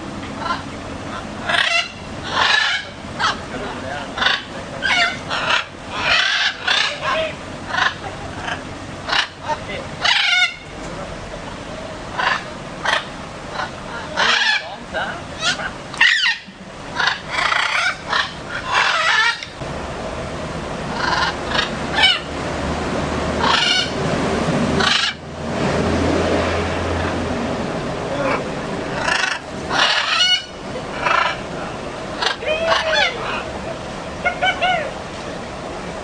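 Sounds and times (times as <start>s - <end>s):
parrots squawking and chirping: 0.3s - 10.7s, 12.1s - 19.6s, 20.9s - 22.4s, 23.3s - 24.0s, 24.8s - 25.2s, 28.2s - 35.0s.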